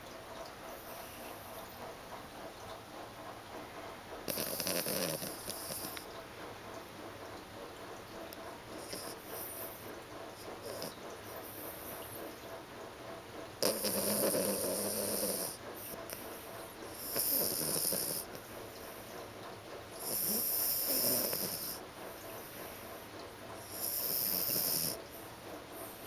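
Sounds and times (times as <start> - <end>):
pet snoring: 4.2 - 6.1, 8.8 - 9.8, 10.4 - 12.2, 13.6 - 16.2, 16.9 - 18.4, 20.0 - 21.8, 23.6 - 25.1.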